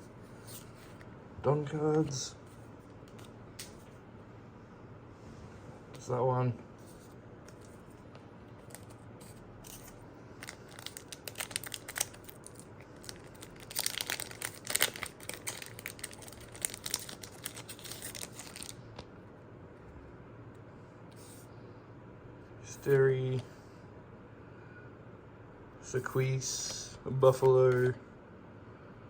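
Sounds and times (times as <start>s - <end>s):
foil wrapper tearing and crinkling: 9.6s - 18.8s.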